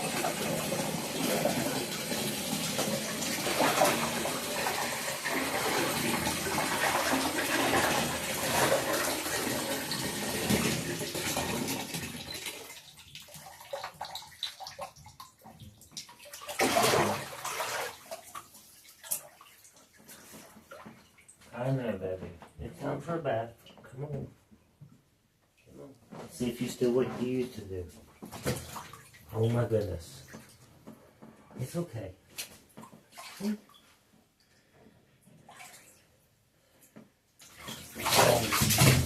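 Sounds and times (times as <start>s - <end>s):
tap water running into tub: 0.0s - 21.1s, 37.4s - 39.0s.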